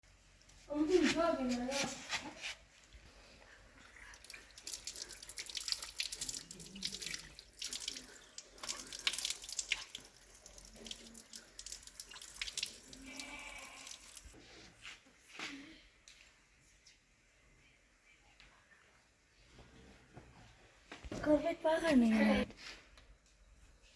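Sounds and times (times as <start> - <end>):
water running and splashing: 3.8 - 14.4.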